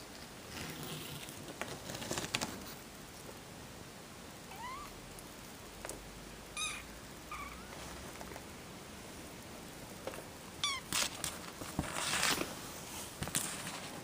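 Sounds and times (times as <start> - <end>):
rustling: 0.1 - 2.9, 10.0 - 14.0
kitten mewing: 4.5 - 5.0, 6.6 - 7.8, 10.6 - 10.9.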